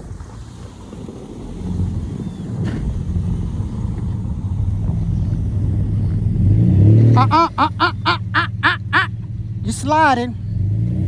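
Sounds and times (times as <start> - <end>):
short sharp pitched pulses: 7.2 - 9.1.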